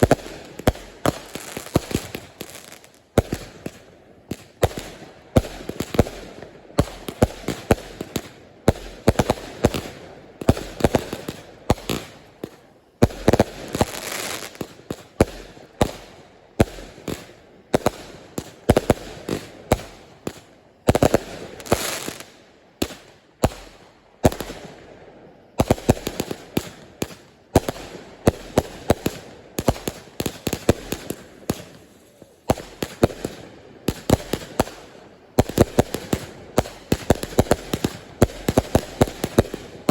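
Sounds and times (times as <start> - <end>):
fireworks hissing: 0.0 - 4.5, 13.1 - 15.1, 21.1 - 22.4, 30.0 - 33.0
fireworks bangs: 0.0 - 24.7, 25.6 - 39.9.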